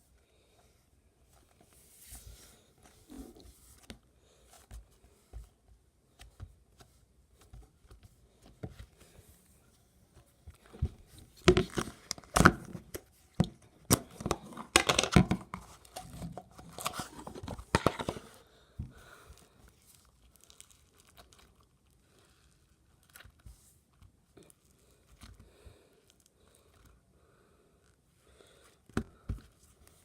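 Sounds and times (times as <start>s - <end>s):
slime crackling and popping: 20.0s - 21.9s.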